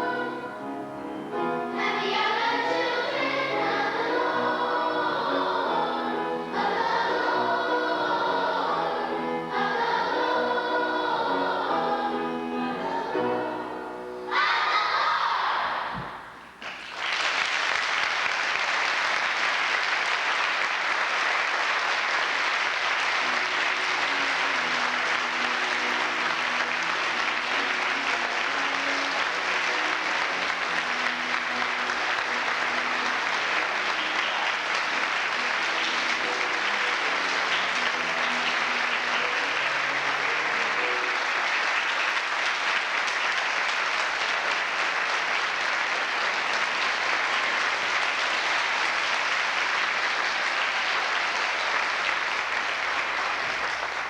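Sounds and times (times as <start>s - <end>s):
congregation applauding: 16.5s - 54.0s.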